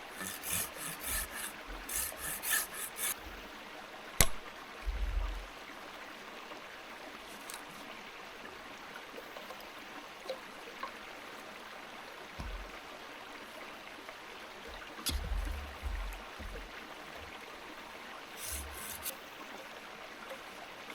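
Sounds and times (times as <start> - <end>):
river water flowing: 0.0 - 4.8, 5.4 - 20.9
low thumps: 15.1 - 16.7.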